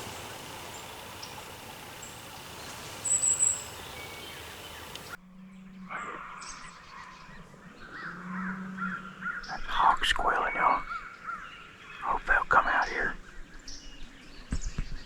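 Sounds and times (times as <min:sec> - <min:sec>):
birds chirping: 0:00.0 - 0:05.2
hawk squealing calls: 0:00.0 - 0:05.2
high thin whistled bird call: 0:00.0 - 0:05.2
low hum: 0:00.0 - 0:05.2
steady hiss: 0:00.0 - 0:05.2.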